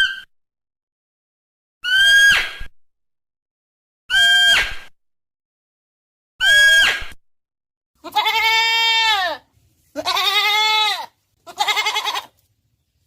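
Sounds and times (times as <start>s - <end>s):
goat bleating: 8.0s - 12.4s.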